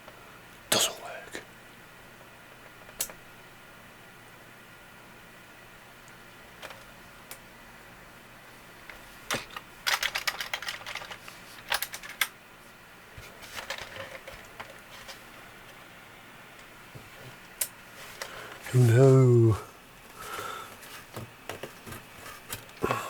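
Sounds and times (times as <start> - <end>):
computer keys clattering: 9.5 - 12.3.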